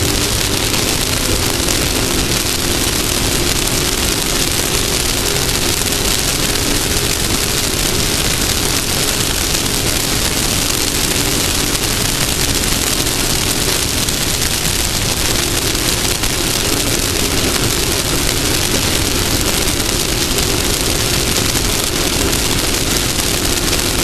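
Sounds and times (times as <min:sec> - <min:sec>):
buggy engine running: 0:00.0 - 0:24.0
terrain rumble: 0:00.0 - 0:24.0.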